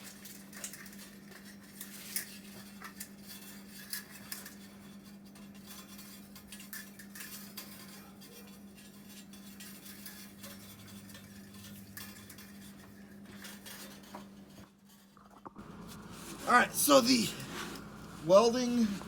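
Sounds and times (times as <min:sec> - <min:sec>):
metal tools clinking and rattling: 0:00.0 - 0:14.5
steady low hum: 0:15.6 - 0:19.0.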